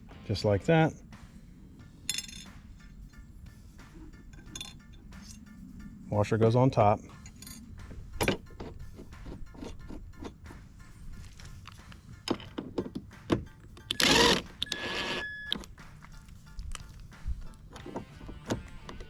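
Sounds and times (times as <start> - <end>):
metal clicks and clinks: 2.1 - 2.6
power tool driving bolt: 13.9 - 15.2.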